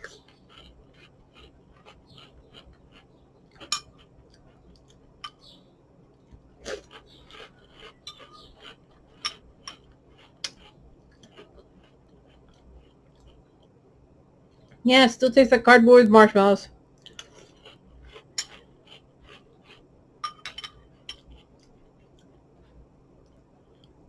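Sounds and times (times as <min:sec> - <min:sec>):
spoon clinking against bowl: 0:20.2 - 0:20.8.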